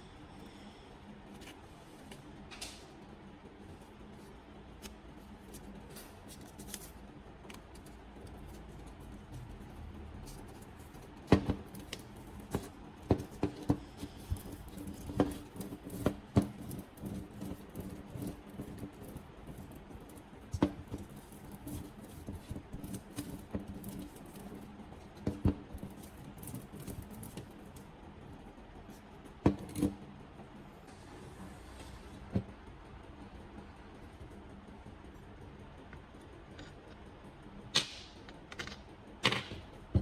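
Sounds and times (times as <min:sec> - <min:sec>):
faint steady hum: 0:00.0 - 0:40.0
clicks of small hard parts handled: 0:37.8 - 0:39.6.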